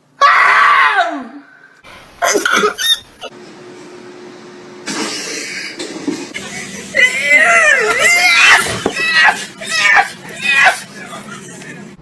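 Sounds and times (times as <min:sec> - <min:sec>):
person mock sneezing and coughing: 0:02.2 - 0:02.8.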